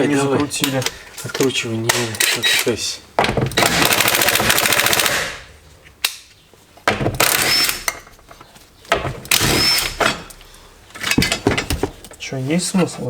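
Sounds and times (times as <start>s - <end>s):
impact wrench hammering: 3.2s - 5.5s, 6.9s - 8.2s, 8.9s - 10.4s.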